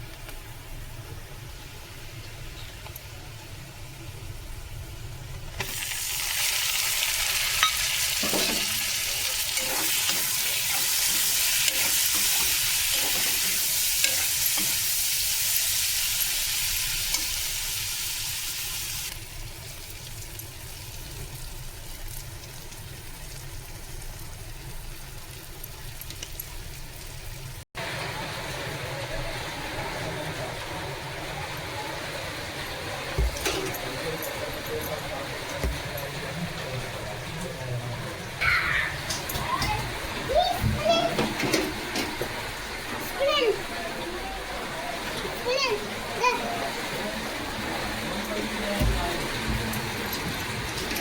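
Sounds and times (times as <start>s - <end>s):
food sizzling in hot oil: 5.6s - 28.8s
spoon scraping a pan: 7.5s - 15.0s.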